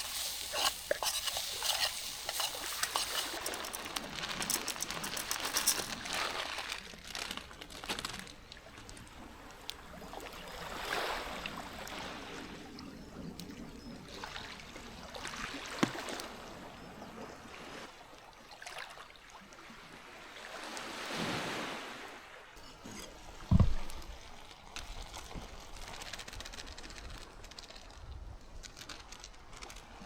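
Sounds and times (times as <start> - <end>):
small waves washing: 0.0 - 7.6.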